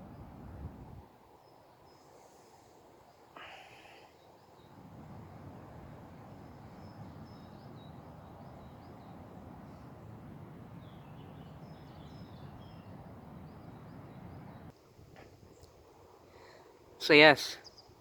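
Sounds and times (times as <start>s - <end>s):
small birds chirping: 1.4s - 14.7s, 17.6s - 18.0s.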